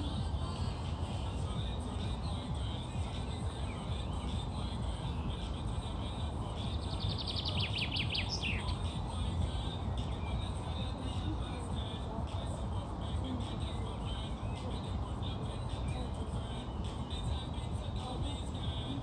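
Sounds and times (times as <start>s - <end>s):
faint continuous chirping: 0.0s - 19.0s
outdoor background noise: 0.0s - 19.0s
bird trilling: 6.7s - 8.8s.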